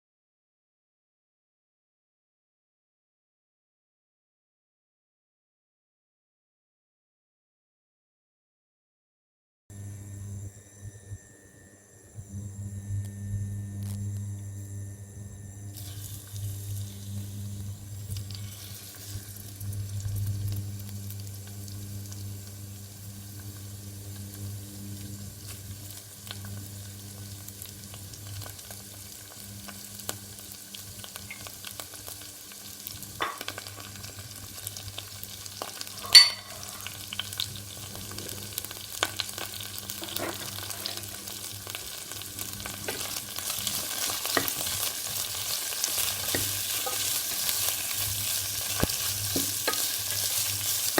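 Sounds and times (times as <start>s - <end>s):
steady low hum: 9.7s - 30.6s
food sizzling in a pan: 9.8s - 50.9s
spatula scraping a pan: 18.1s - 19.6s, 39.1s - 50.9s
sharp metal clink: 36.0s - 36.6s.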